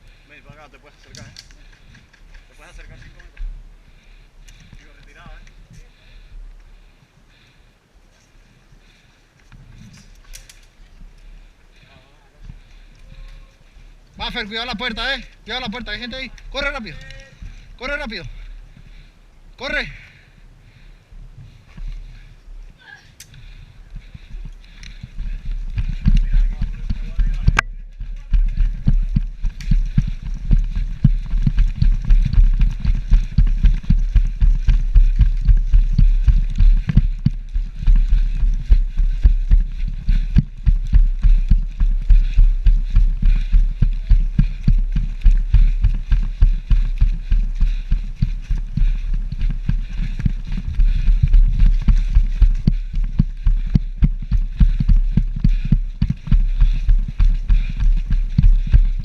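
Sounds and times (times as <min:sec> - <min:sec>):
running footsteps thumping: 0:23.4 - 0:59.0.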